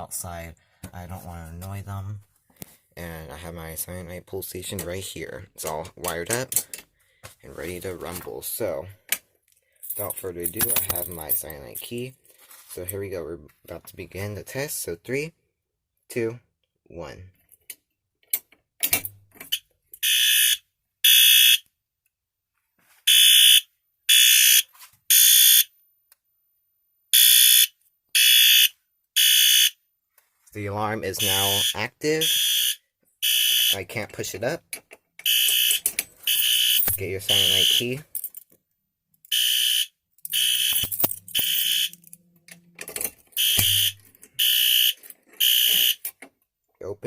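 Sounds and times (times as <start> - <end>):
fire alarm horn blasts: 20.0 - 21.6, 23.1 - 25.7, 27.1 - 29.8, 31.2 - 33.8, 35.2 - 37.9, 39.3 - 42.0, 43.4 - 46.0.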